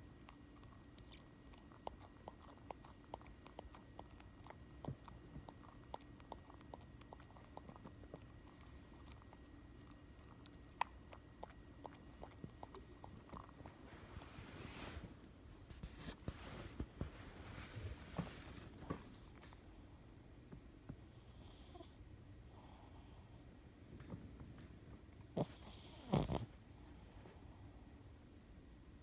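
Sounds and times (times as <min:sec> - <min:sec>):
puppy grinding teeth: 0:00.2 - 0:13.8.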